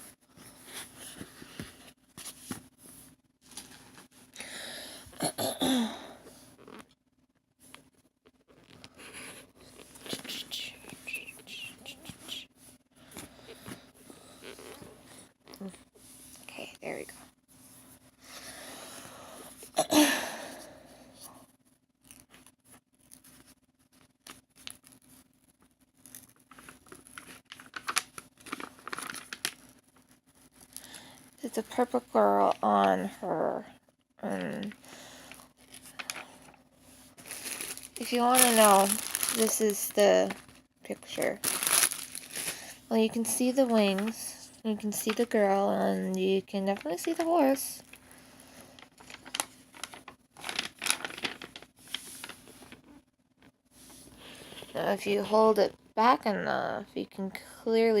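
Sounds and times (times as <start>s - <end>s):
person clearing throat: 5.2s - 6.2s, 19.8s - 20.4s
packaging rustling: 26.0s - 30.9s, 34.6s - 44.2s, 48.8s - 52.9s.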